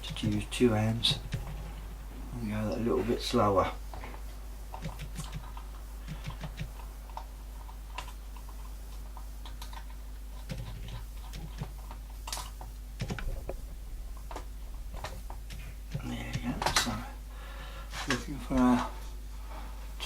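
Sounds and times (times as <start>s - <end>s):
dull knocks: 13.0s - 17.1s.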